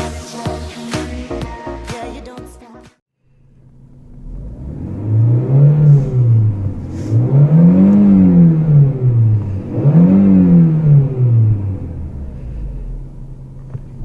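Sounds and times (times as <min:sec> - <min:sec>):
car engine idling and revving: 0:03.4 - 0:14.0.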